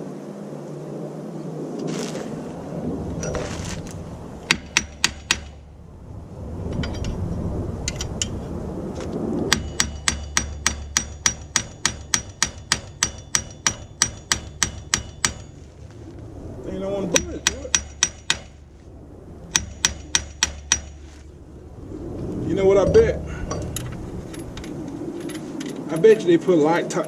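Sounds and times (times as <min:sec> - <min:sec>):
hammer striking steel bolts: 0:04.5 - 0:05.6, 0:09.5 - 0:15.6, 0:17.2 - 0:18.6, 0:19.6 - 0:21.0.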